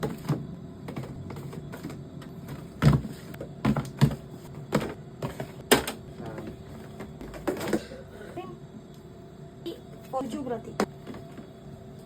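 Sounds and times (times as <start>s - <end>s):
food containers knocking and clattering: 0.0s - 8.0s
refrigerator hum: 0.0s - 12.0s.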